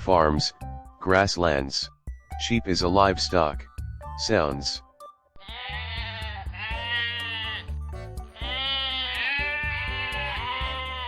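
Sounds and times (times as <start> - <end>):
background music: 0.0 - 11.0
sheep bleating: 5.4 - 7.7, 8.4 - 11.0.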